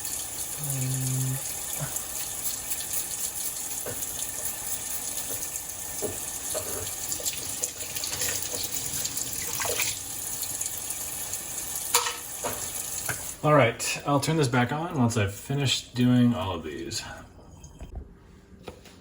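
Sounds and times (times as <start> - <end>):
tap water running into sink: 0.0 - 13.4.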